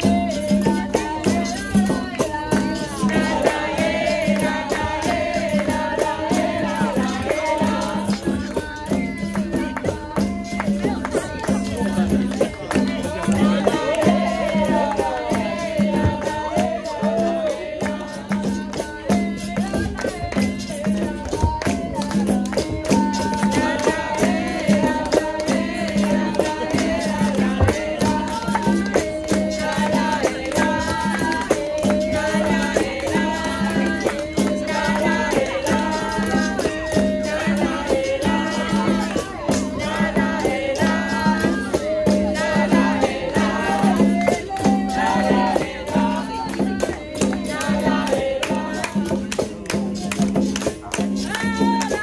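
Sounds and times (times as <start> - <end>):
people singing: 0.0 - 52.0
frame drum: 10.0 - 18.0.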